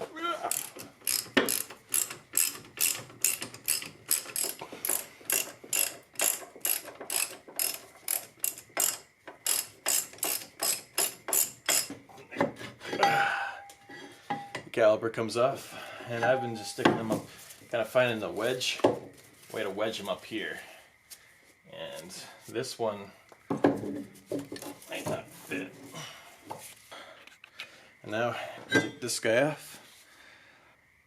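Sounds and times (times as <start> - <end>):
hand ratchet clicking: 0.5 - 12.0.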